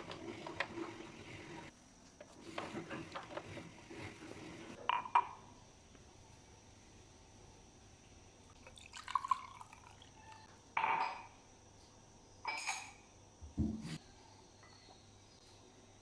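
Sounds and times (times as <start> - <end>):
glass clinks: 10.8 - 11.4, 12.5 - 13.0.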